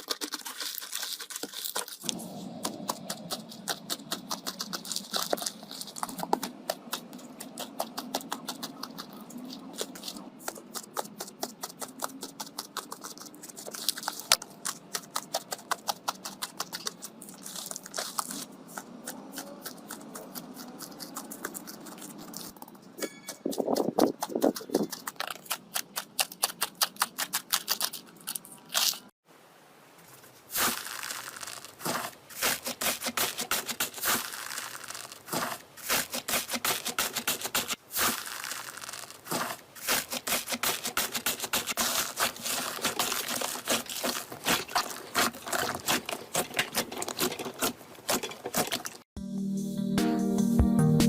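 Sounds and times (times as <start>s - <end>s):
slime crackling and popping: 30.6s - 36.0s, 36.6s - 46.4s.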